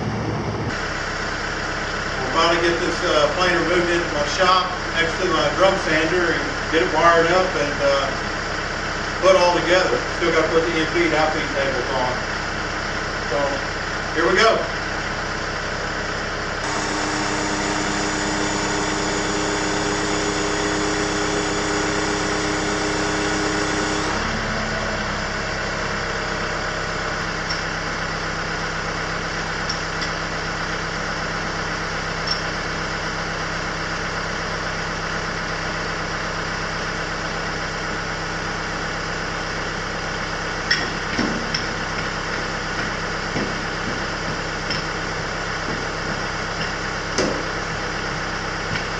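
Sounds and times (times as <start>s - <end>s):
engine humming: 14.8s - 30.8s.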